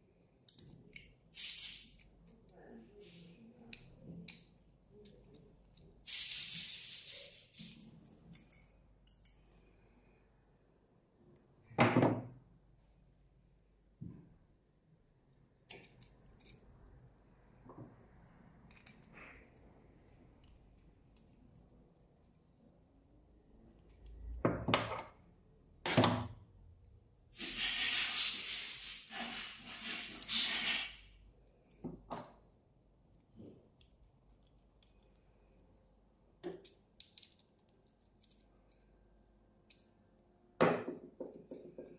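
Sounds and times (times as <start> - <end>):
hissing scrape: 1.4 - 2.0, 6.0 - 8.0, 27.4 - 31.1.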